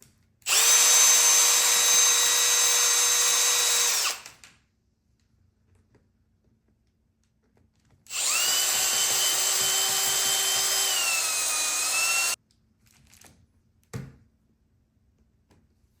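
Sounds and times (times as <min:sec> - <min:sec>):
power drill whining: 0:00.5 - 0:04.3, 0:08.1 - 0:12.4.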